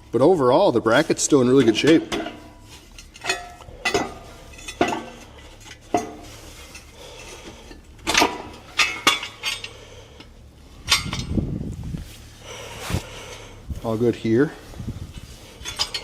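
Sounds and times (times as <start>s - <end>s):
metal tools clinking: 1.2s - 11.4s, 15.2s - 16.0s
low rumble: 9.7s - 16.0s.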